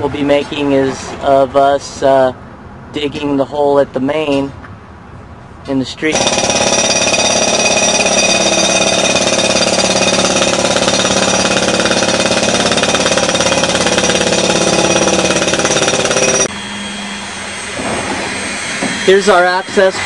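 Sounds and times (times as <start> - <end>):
jackhammer hammering pavement: 6.1 - 16.5.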